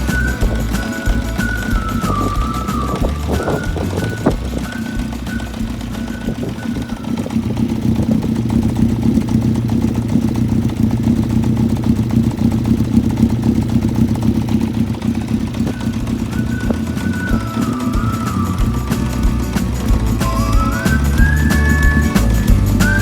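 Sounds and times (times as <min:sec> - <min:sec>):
motorcycle engine idling: 0:00.0 - 0:23.0.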